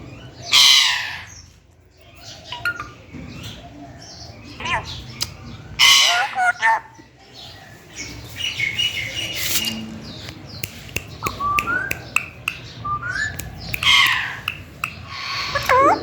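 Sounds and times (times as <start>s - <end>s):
parrot chirping and squawking: 0.5s - 1.3s, 5.8s - 7.0s, 11.2s - 16.0s
sharp clicks: 10.2s - 12.7s.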